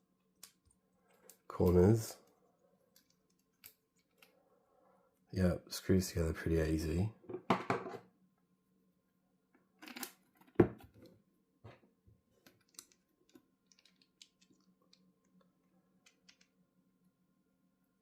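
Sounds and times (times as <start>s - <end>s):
small light clicks and ticks: 12.4s - 16.5s.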